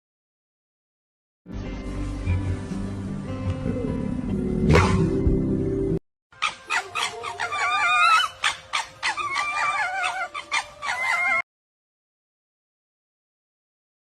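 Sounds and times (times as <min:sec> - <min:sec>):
animal calls with wavering pitch: 0:06.4 - 0:11.4.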